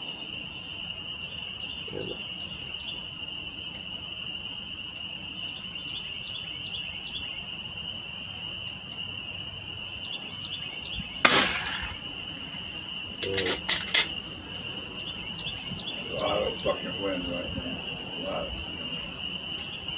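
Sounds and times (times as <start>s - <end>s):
high insect buzz: 0.0s - 19.9s
air rifle shot: 11.2s - 12.1s.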